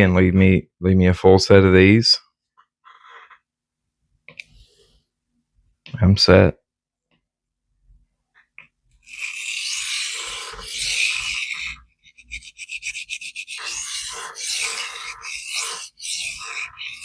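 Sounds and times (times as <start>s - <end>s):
knife scraping on sharpening stone: 9.0s - 17.0s.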